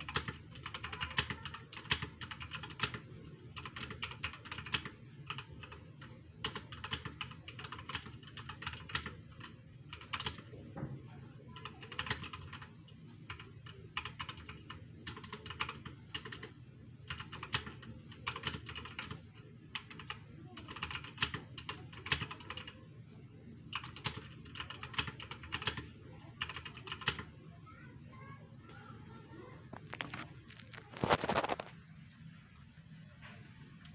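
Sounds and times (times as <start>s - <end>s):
rapid typing on keyboard: 0.0s - 10.6s, 11.4s - 22.8s, 23.6s - 27.4s
faint low hum: 0.0s - 33.9s.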